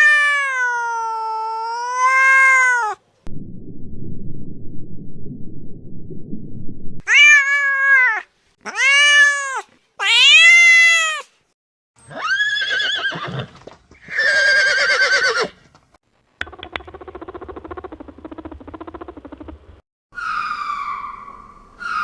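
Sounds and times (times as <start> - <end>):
cat meowing: 0.0 - 3.0, 7.1 - 11.3
low rough rumble: 3.3 - 7.0
quavering animal calls: 20.2 - 22.0.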